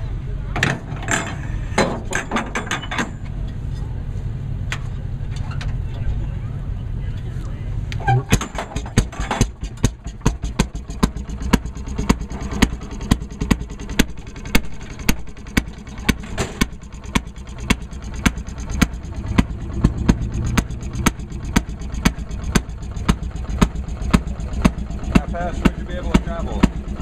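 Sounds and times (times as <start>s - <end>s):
small engine idling with pops: 7.9s - 27.0s.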